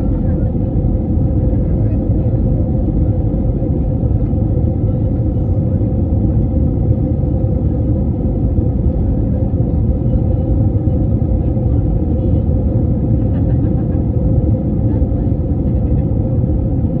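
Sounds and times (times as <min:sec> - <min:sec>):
jet engine rumble: 0:00.0 - 0:17.0.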